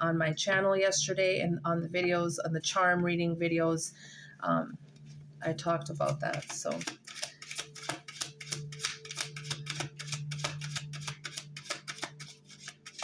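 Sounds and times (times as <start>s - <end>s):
quiet background music: 0.0s - 13.0s
cards being shuffled: 6.1s - 13.0s.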